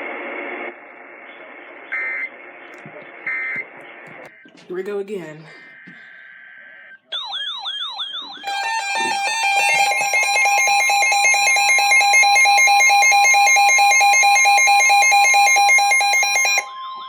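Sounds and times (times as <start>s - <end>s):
sweeping warble alert tone: 8.1s - 11.4s
two-tone attention signal: 8.2s - 16.8s.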